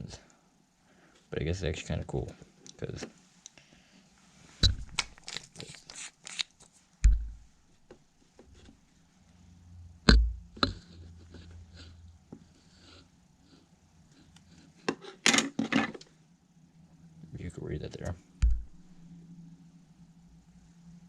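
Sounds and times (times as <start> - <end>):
heavy thumps: 4.6 - 5.0, 7.0 - 7.5, 10.1 - 10.9, 18.4 - 18.8.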